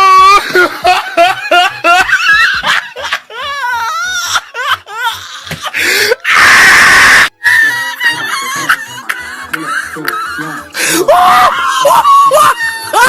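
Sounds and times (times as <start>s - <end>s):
people laughing and shrieking: 0.0s - 13.0s
loud harsh scream: 6.2s - 7.8s.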